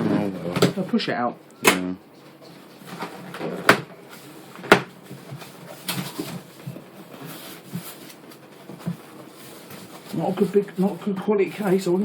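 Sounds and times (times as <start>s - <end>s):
cardboard scraping and rustling: 5.0s - 12.0s.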